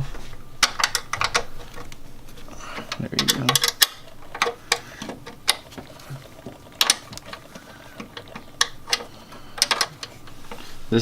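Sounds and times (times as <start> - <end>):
metal tools clinking: 0.0 - 5.7.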